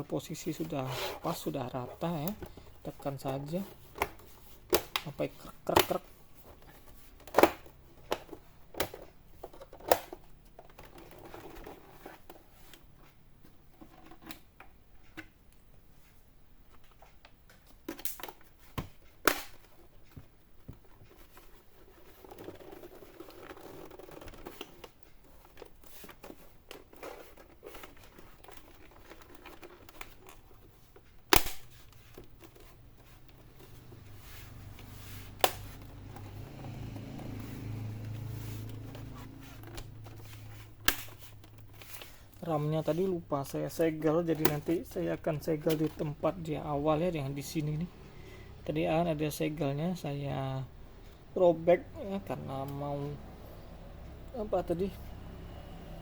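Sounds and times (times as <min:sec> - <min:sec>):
handling and rustling: 0:00.0 - 0:56.0
plastic clips snapping shut: 0:17.9 - 0:19.7, 0:31.3 - 0:32.6.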